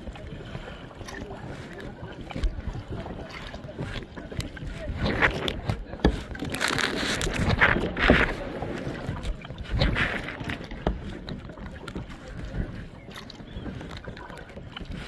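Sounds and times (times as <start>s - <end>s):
paddle splashing through water: 0.0s - 15.0s.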